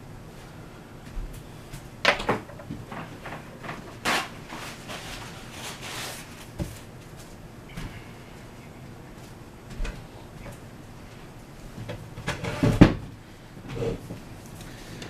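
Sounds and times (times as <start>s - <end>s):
objects knocking and clattering: 2.0s - 4.2s
rustling: 2.9s - 7.4s.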